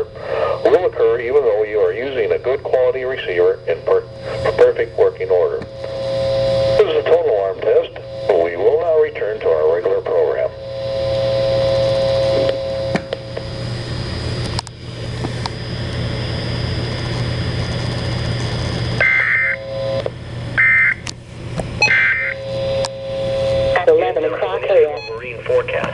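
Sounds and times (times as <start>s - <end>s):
broadcast hiss: 0.0s - 13.6s, 21.9s - 25.9s
steady electronic hum: 0.0s - 25.9s
shrill digital data bursts: 21.8s - 22.6s.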